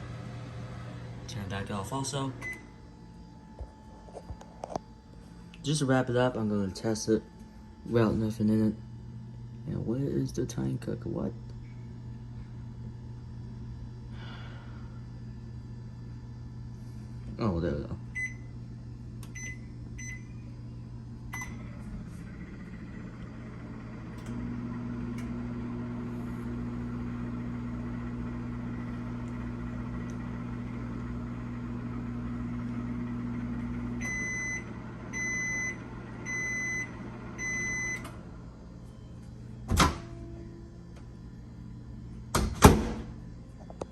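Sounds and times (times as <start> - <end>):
microwave humming: 0.0 - 43.9
microwave tone: 0.0 - 43.9
microwave clunk: 39.6 - 40.5, 42.3 - 43.2.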